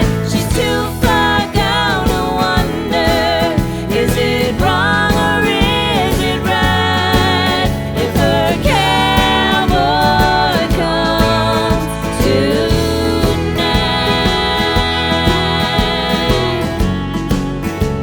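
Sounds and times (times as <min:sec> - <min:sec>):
country song with singing: 0:00.0 - 0:18.0.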